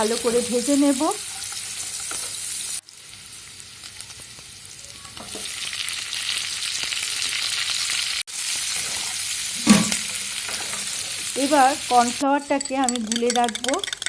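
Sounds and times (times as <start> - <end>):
vegetables sizzling in oil: 0.0 - 13.4
spatula scraping a pan: 8.7 - 11.1.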